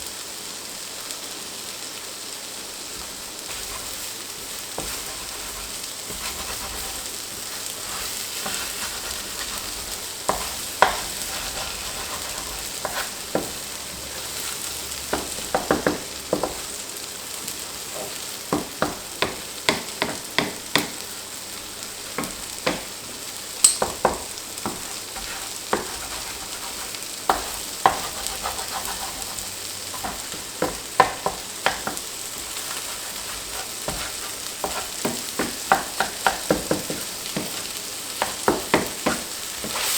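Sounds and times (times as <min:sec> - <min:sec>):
rice sizzling in a pan: 0:00.0 - 0:39.9
utensil scraping a pan: 0:03.5 - 0:16.8, 0:23.7 - 0:39.9.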